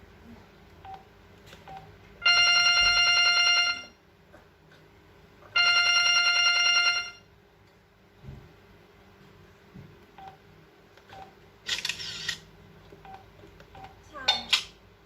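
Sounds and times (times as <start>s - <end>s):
phone ringtone trilling: 2.2s - 4.0s, 5.6s - 7.3s.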